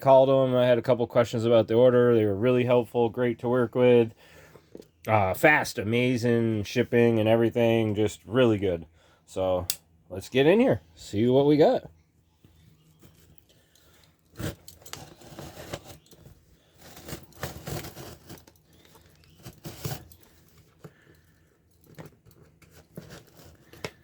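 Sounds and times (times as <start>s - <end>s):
packing tape tearing: 14.3s - 20.4s
cardboard scraping and crinkling: 14.3s - 21.0s, 21.8s - 24.0s.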